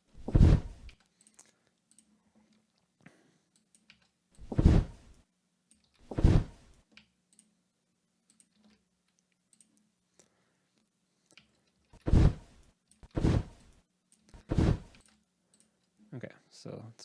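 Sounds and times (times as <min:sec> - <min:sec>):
deep whooshing wing flaps: 0:00.2 - 0:00.9, 0:04.4 - 0:05.1, 0:06.1 - 0:06.7, 0:12.0 - 0:13.7, 0:14.4 - 0:15.0
faint clicks: 0:00.8 - 0:04.4, 0:08.2 - 0:12.0, 0:15.0 - 0:16.0.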